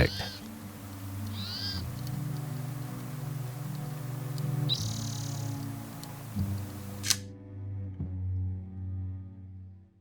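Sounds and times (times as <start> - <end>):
sustained low music notes: 0.0 - 10.0.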